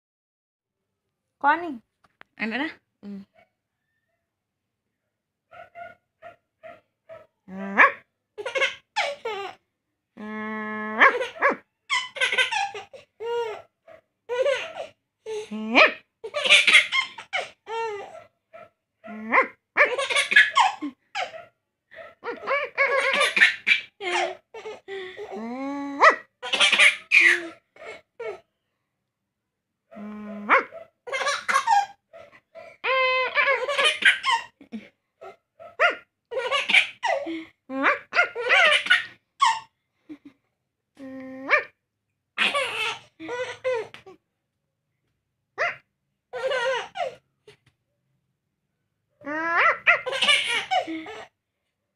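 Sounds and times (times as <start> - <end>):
baby laughing: 7.8 - 9.6, 11.0 - 13.7, 14.3 - 18.2, 19.4 - 21.4, 22.0 - 25.4, 26.0 - 28.4, 30.5 - 32.0, 32.8 - 40.3, 42.4 - 44.2, 46.4 - 47.2, 49.3 - 51.3.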